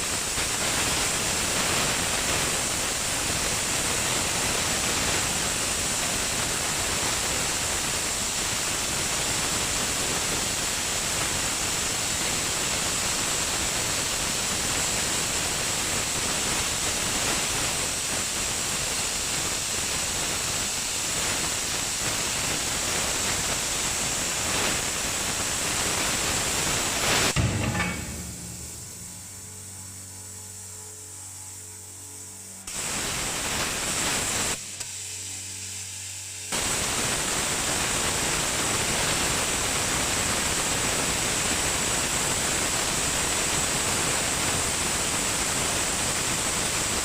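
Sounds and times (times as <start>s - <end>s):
cutting torch hissing rush: 0.0s - 30.4s, 31.6s - 47.0s
thin high whine: 26.8s - 37.4s
low hum: 27.3s - 32.7s.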